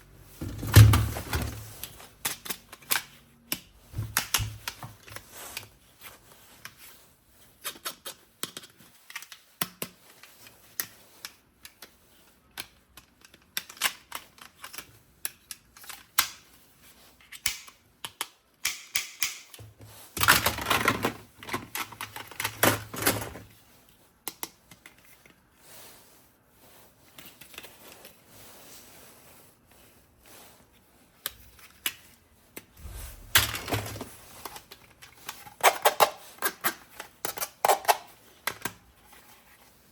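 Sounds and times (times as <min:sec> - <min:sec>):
plastic clicks and rattles: 0:12.6 - 0:16.4.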